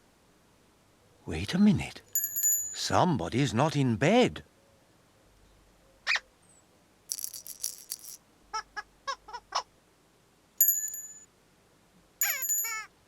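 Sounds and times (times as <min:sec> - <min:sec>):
cartoon rattling shake: 0:07.1 - 0:08.2, 0:12.2 - 0:12.9
bright chime: 0:10.6 - 0:11.2, 0:12.2 - 0:12.9.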